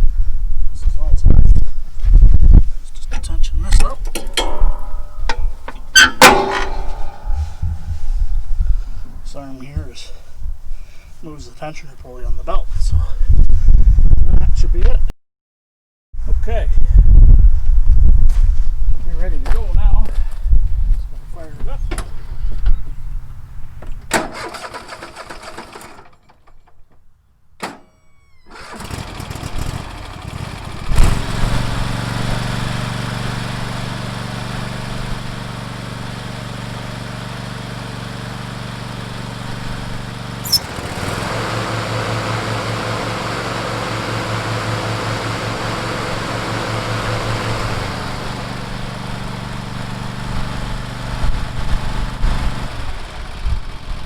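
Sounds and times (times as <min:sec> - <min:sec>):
lawn tractor engine running: 0:03.8 - 0:10.0, 0:23.2 - 0:26.4, 0:28.5 - 0:54.0.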